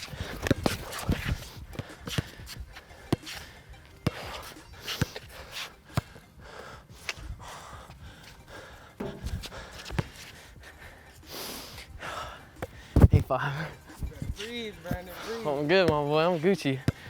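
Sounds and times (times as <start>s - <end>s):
basketball bouncing: 4.0s - 4.3s, 9.0s - 10.2s
heavy panting breaths: 4.3s - 13.0s.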